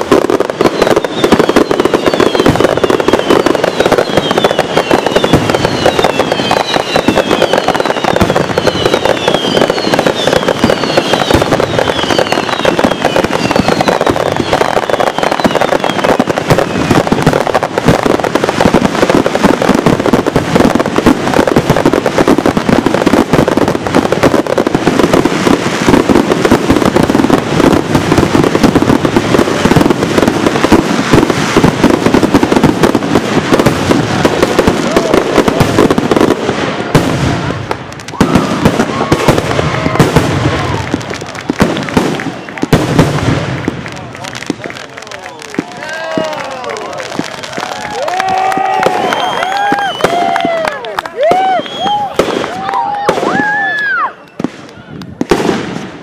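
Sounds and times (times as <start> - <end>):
falling firework whistles: 0.0 - 36.3, 38.0 - 41.1, 41.8 - 43.2, 45.6 - 55.8
fireworks crackling and popping: 0.0 - 56.0.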